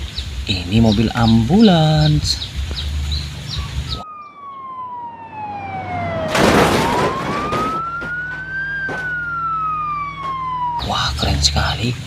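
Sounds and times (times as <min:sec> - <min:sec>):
ambulance siren wailing: 0:03.5 - 0:11.9.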